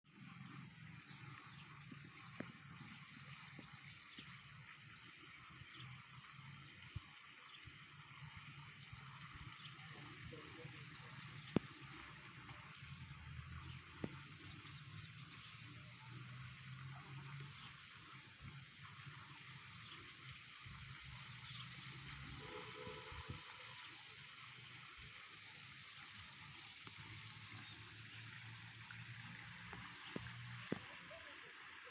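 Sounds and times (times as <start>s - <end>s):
frogs croaking low: 0.1s - 31.9s.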